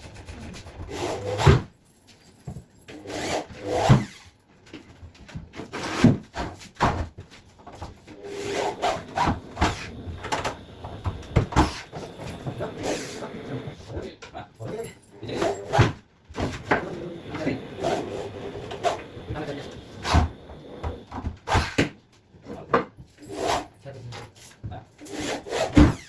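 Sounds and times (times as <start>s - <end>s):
hand tool strokes on wood: 11.3s - 13.8s.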